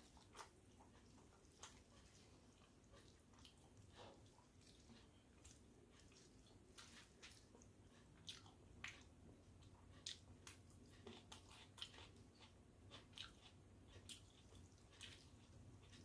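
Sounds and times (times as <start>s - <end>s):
person eating wet chewing sounds: 0.0s - 16.0s.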